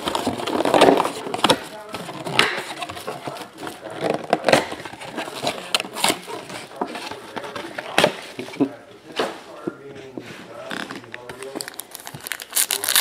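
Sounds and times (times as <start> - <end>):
foil wrappers crinkling and tearing: 11.3 - 13.0.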